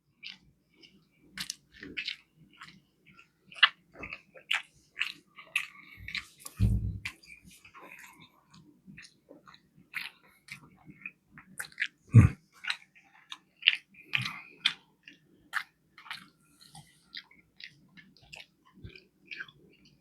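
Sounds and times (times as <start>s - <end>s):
wet chewing mouth clicks: 0.2s - 20.0s
deep thump: 6.6s - 7.1s.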